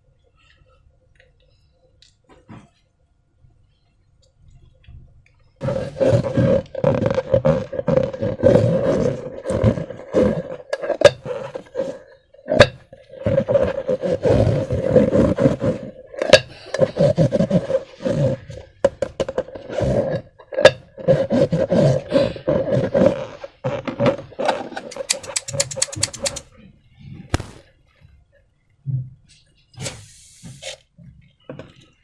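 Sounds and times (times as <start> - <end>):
rubbery squeaks and squelches: 5.6 - 16.0, 16.7 - 18.6, 21.0 - 26.5
sharp snaps: 24.9 - 26.4, 27.3 - 27.6.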